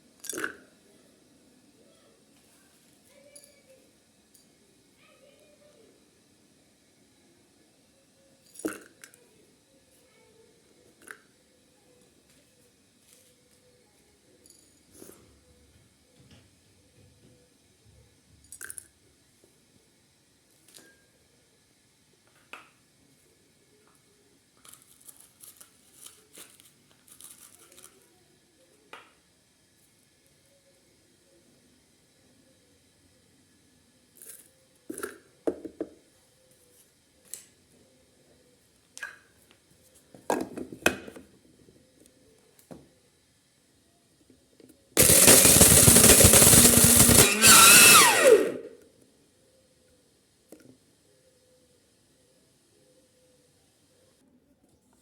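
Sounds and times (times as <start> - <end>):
faint crinkling and rustling: 24.6 - 28.2
electric kitchen grinder running: 45.0 - 48.7
motor winding down whine: 45.0 - 48.7.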